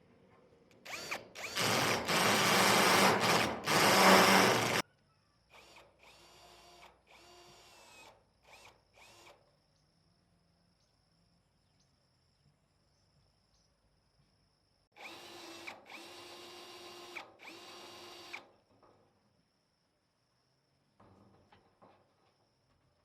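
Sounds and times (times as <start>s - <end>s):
power tool running in bursts: 0.9s - 4.8s.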